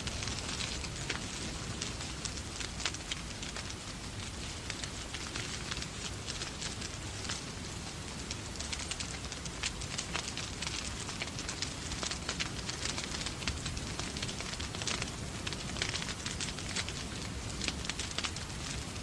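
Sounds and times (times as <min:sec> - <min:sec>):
rain hissing: 0:00.0 - 0:19.0
wood fire crackling and popping: 0:00.0 - 0:19.0.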